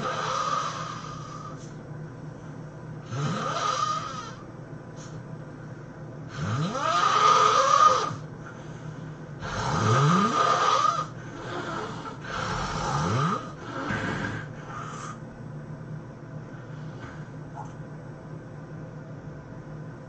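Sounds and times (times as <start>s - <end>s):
person snoring: 0.0s - 1.7s, 3.0s - 4.4s, 6.3s - 8.3s, 9.4s - 15.2s
quiet breathing: 0.0s - 15.5s, 16.3s - 17.8s.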